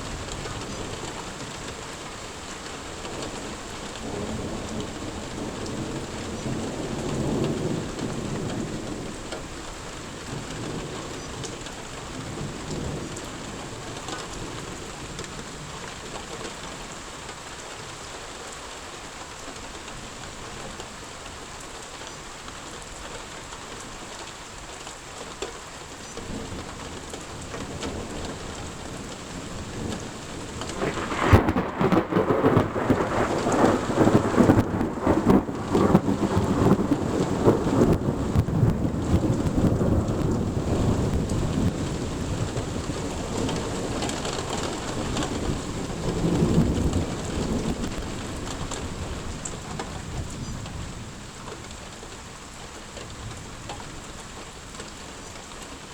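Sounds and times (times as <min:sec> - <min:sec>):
rain falling: 0:00.0 - 0:55.9
thunderclap and rumbling thunder: 0:02.9 - 0:17.0, 0:26.2 - 0:51.8.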